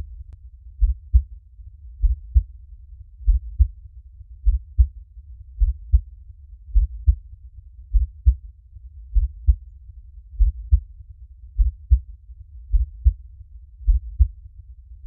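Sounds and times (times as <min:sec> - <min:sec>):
slow heartbeat thumps: 0:00.8 - 0:01.3, 0:02.0 - 0:02.5, 0:03.2 - 0:03.7, 0:04.4 - 0:04.9, 0:05.6 - 0:06.1, 0:06.7 - 0:07.2, 0:07.9 - 0:08.4, 0:09.1 - 0:09.6, 0:10.4 - 0:10.9, 0:11.6 - 0:12.0, 0:12.7 - 0:13.2, 0:13.8 - 0:14.4.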